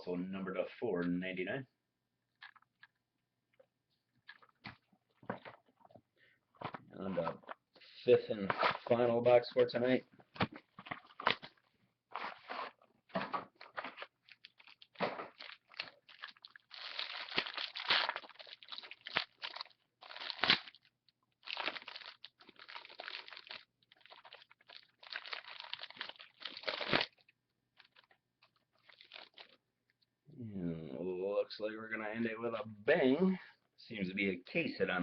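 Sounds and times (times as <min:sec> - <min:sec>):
paper and cardboard rustling: 0:08.4 - 0:14.3.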